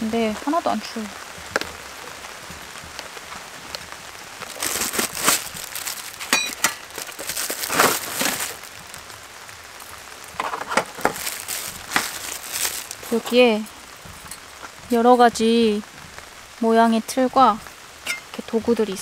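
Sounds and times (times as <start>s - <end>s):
rain pattering: 0.0s - 19.0s
packaging crinkling: 4.4s - 13.5s.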